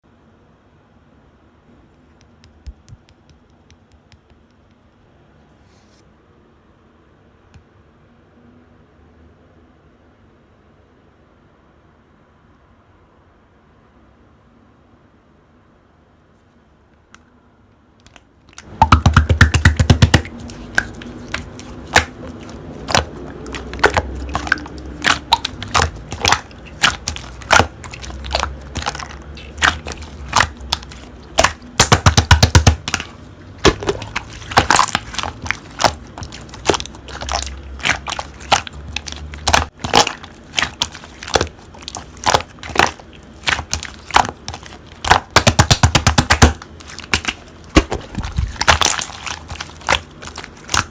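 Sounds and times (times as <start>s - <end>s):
slime squeezed by hand crackling: 18.1s - 50.9s.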